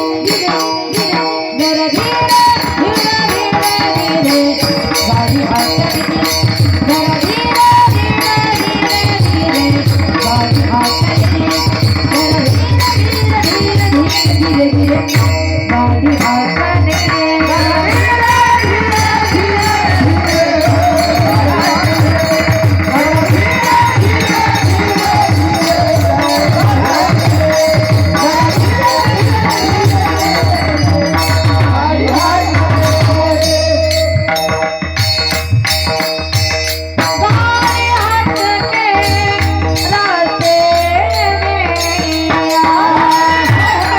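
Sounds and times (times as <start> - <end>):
hand drum rhythm: 0.0 - 43.9
jingling percussion: 0.0 - 43.9
wavering melodic line: 17.1 - 43.9.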